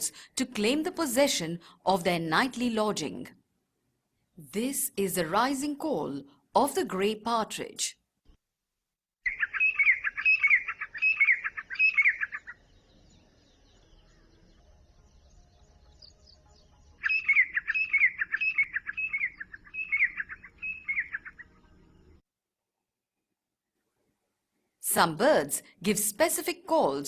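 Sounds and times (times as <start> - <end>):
partridge shrill calls: 9.3 - 12.7, 17.0 - 21.4.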